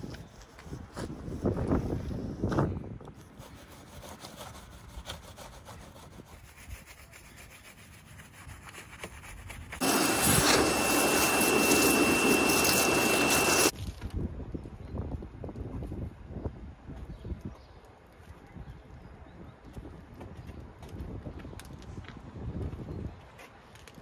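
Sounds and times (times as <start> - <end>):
pressure washer spraying hiss: 9.8 - 13.7.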